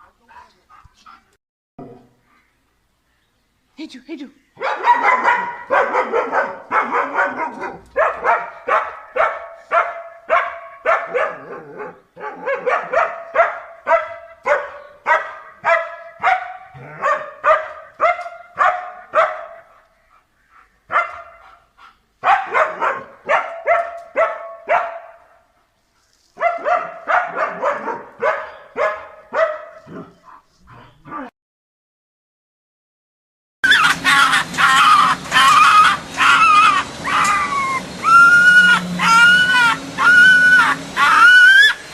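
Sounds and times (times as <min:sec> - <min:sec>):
dog barking: 0:04.6 - 0:19.8, 0:20.9 - 0:25.5, 0:26.4 - 0:30.4.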